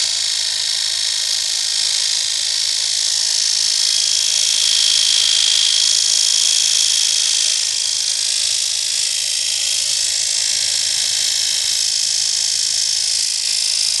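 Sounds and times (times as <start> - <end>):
alternator high-pitched whine: 0.0 - 14.0.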